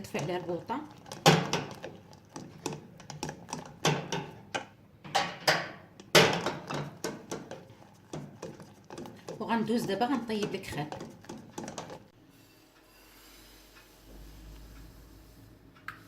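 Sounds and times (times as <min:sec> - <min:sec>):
utensil tapping a cooking pot: 0:00.0 - 0:12.1.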